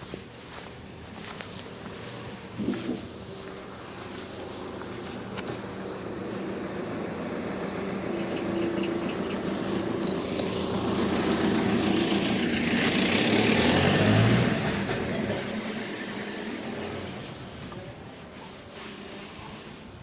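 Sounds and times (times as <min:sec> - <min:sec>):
motor vehicle passing by: 0:00.5 - 0:20.0.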